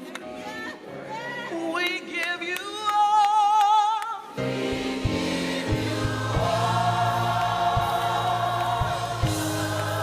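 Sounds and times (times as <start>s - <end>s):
gospel choir singing: 4.2s - 10.0s.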